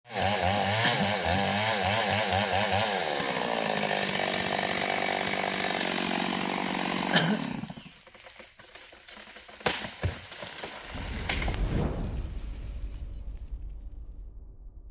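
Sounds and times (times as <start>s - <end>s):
mini chainsaw engine running: 0.1s - 9.1s.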